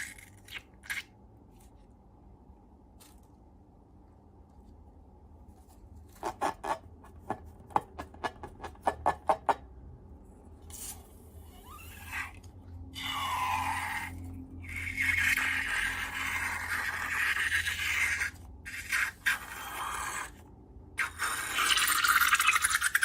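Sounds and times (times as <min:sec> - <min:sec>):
slime rubbing and scraping: 0:05.4 - 0:07.6.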